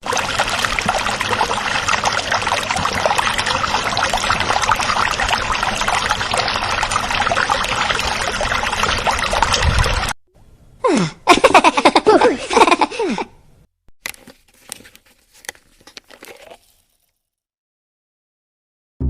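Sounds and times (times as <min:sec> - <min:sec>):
clicky pouring noise: 0:14.0 - 0:17.1.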